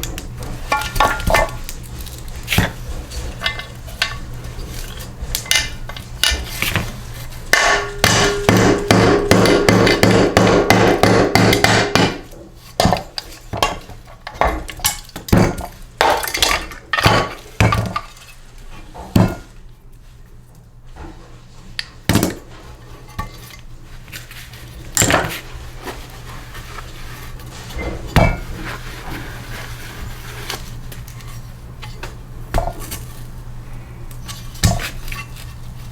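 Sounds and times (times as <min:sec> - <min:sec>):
hammer striking metal: 0:07.5 - 0:12.3.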